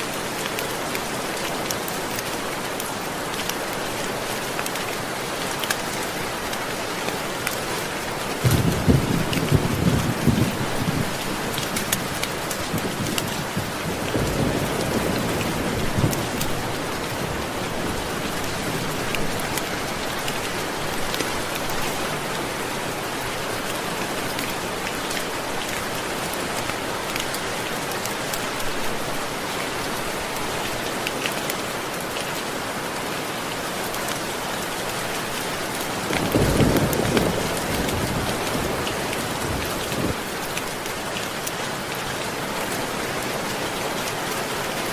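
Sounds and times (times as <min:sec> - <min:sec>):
heavy rainfall: 0:00.0 - 0:44.9
distant thunder rumbles: 0:08.4 - 0:11.2, 0:36.1 - 0:40.2.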